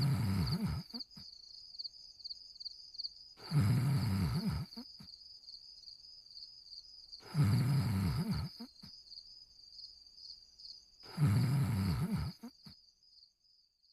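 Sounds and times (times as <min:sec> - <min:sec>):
cartoon dog snoring: 0:00.0 - 0:01.2, 0:03.4 - 0:05.1, 0:07.2 - 0:08.8, 0:11.0 - 0:12.7
crickets chirping: 0:00.0 - 0:13.9.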